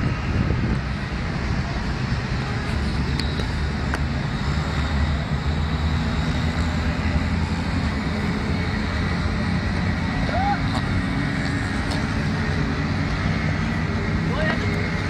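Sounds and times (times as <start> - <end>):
street traffic rumble: 0.0 - 15.0.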